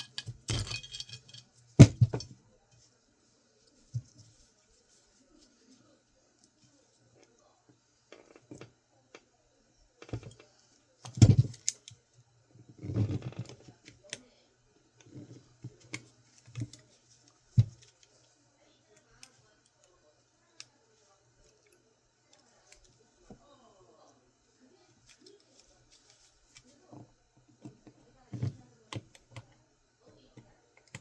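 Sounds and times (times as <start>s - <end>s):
metal rattle: 0.0s - 2.3s
hard drive parts clicking and knocking: 0.0s - 2.4s, 11.1s - 11.7s.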